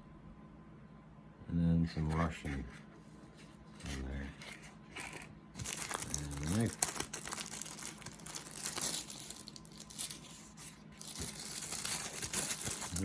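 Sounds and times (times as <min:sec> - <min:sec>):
plastic bag crinkling: 0:05.0 - 0:13.0.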